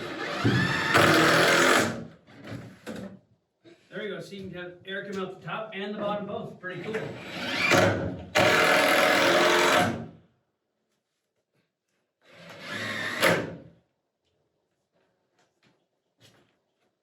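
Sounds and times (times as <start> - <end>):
power drill running: 0.0 - 2.0, 7.2 - 10.0, 12.4 - 13.5.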